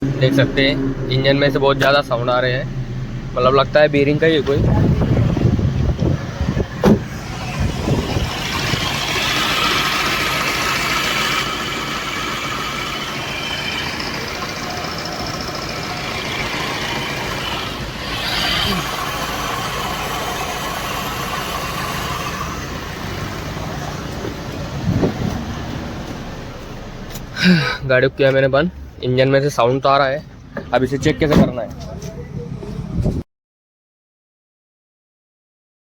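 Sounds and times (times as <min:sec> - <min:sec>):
car engine idling: 0:00.0 - 0:28.0
high-pitched pulley noise: 0:06.8 - 0:24.0.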